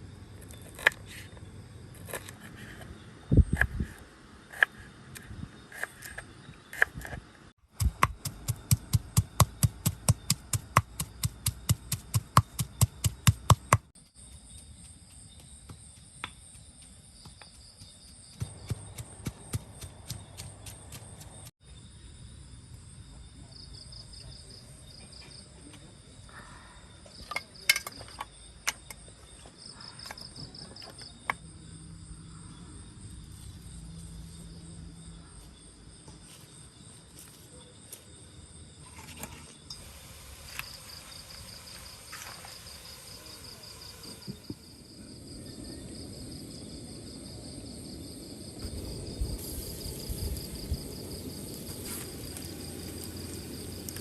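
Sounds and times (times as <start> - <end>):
insects trilling: 7.9 - 54.0.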